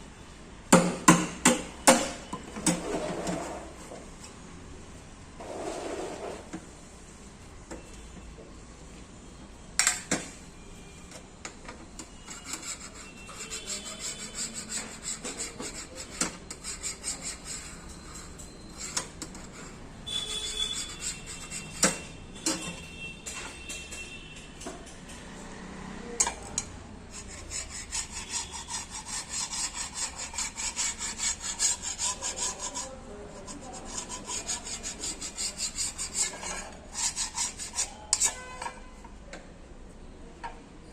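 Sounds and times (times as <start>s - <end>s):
sharp knocks on metal: 0.7s - 2.2s
sanding sheet metal by hand: 12.2s - 22.0s, 27.1s - 38.4s.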